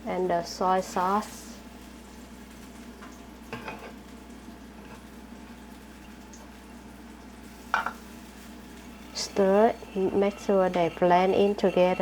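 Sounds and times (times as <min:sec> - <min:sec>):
fish sizzling in hot oil: 0:00.6 - 0:12.0.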